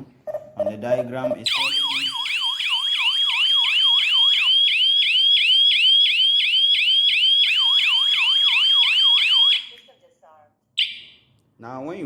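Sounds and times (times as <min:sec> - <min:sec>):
alarm siren whooping: 0:01.5 - 0:09.8.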